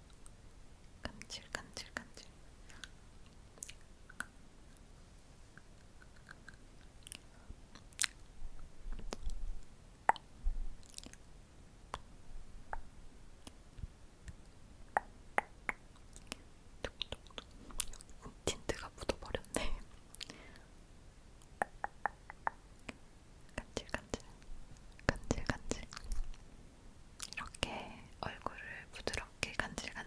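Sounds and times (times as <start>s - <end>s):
wet lip and tongue clicks: 3.6s - 4.3s, 5.9s - 8.2s, 9.0s - 9.4s, 10.1s - 11.2s, 14.2s - 18.2s, 21.4s - 23.0s, 27.2s - 27.6s.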